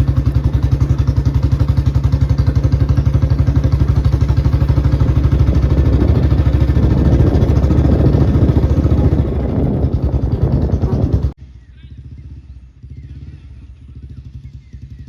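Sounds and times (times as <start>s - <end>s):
motorcycle engine running: 0.0s - 15.0s.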